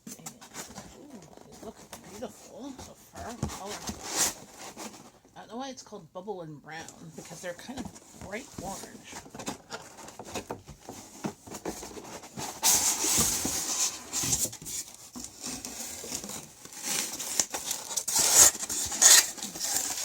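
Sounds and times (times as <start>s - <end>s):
packaging crinkling and rustling: 7.2s - 20.0s.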